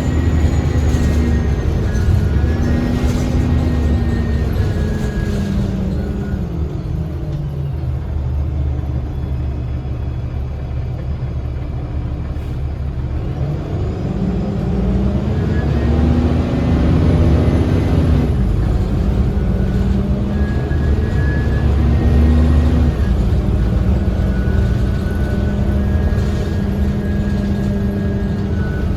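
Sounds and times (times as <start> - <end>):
bus diesel engine drone: 0.0 - 28.9.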